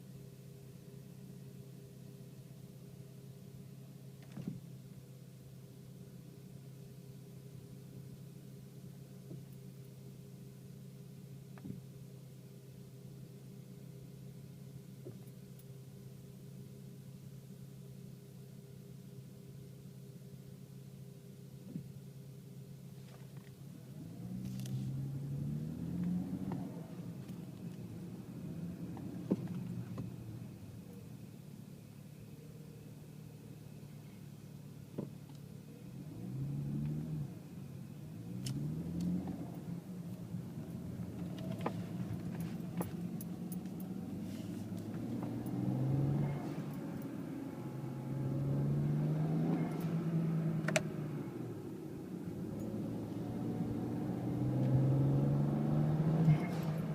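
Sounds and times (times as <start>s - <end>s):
car engine accelerating: 23.0s - 56.9s.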